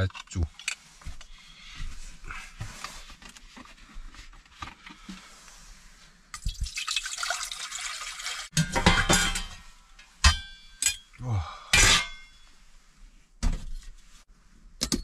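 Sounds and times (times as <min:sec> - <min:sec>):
water pouring into pot: 0:06.4 - 0:08.5.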